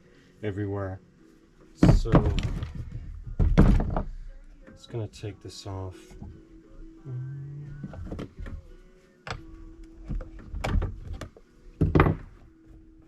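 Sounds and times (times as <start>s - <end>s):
parts clattering: 1.8s - 4.5s.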